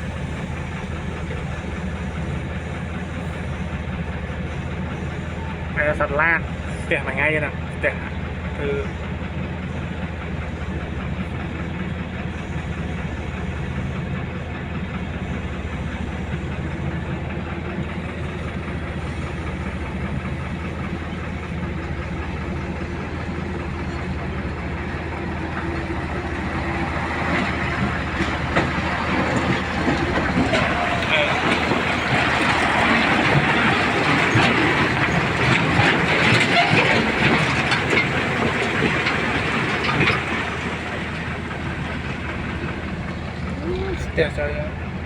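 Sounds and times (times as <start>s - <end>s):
truck engine running: 0.0s - 45.0s
knocks and rattles: 25.6s - 41.7s.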